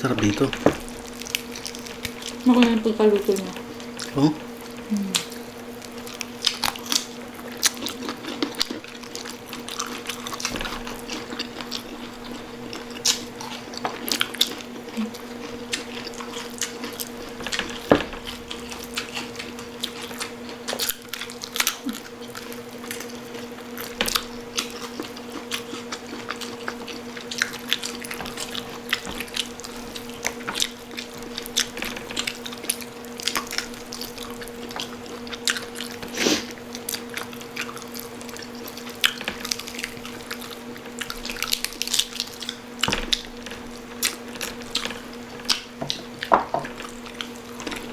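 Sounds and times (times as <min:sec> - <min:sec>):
chewing crispy food: 0:00.0 - 0:47.9
steady hum: 0:00.0 - 0:47.9.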